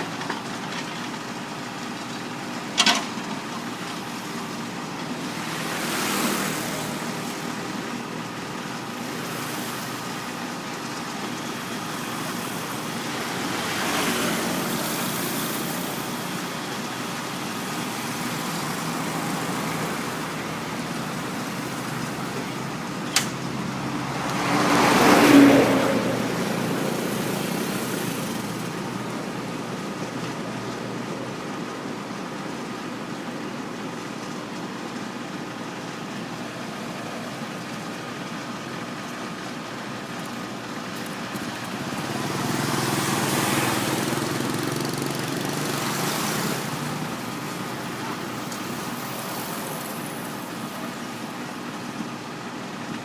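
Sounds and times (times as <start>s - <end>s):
road noise: 0.0s - 53.0s.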